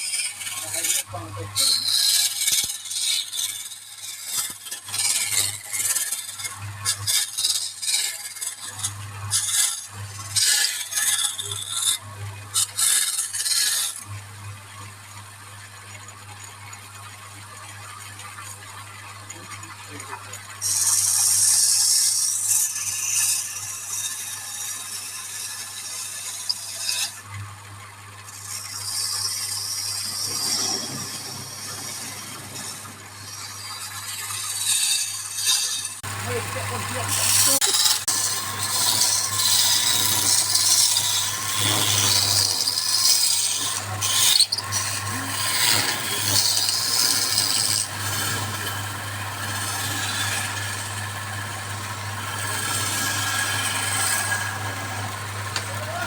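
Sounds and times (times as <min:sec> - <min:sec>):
turning tool scraping spinning wood: 0:00.0 - 0:12.0, 0:28.2 - 0:56.0
wood lathe motor humming: 0:28.2 - 0:56.0.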